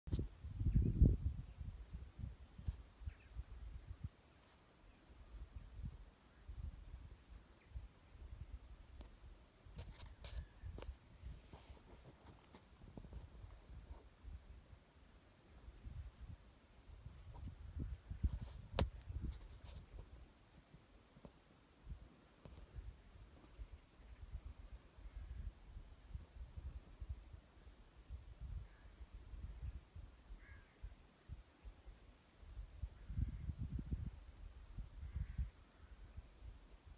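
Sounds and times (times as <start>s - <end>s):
wind on microphone: 0.1s - 4.1s, 15.7s - 20.2s, 32.8s - 35.6s
insect chirping: 0.1s - 36.9s.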